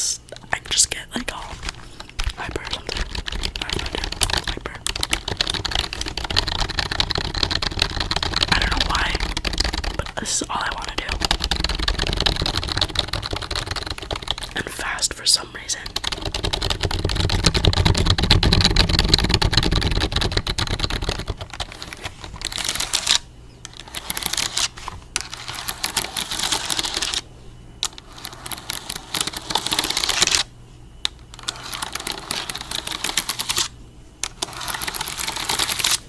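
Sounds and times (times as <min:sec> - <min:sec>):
rapid typing on keyboard: 0:01.4 - 0:27.2, 0:27.8 - 0:30.5, 0:31.4 - 0:36.0.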